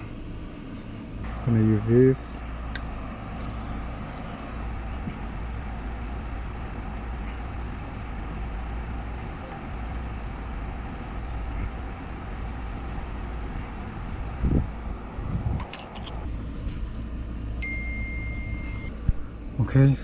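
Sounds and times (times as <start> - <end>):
low rumble and hiss: 0.0 - 20.0.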